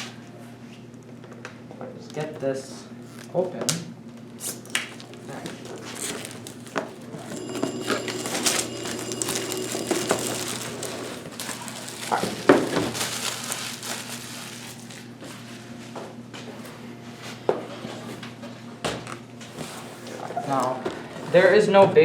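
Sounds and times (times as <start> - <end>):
packaging crinkling: 4.6 - 6.9, 8.0 - 15.1.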